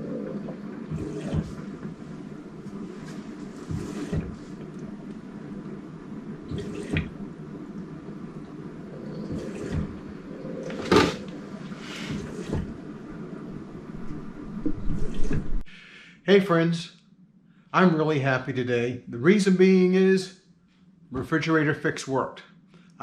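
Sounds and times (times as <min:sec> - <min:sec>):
steady low hum: 0:00.0 - 0:23.0
water running and splashing: 0:06.3 - 0:12.8.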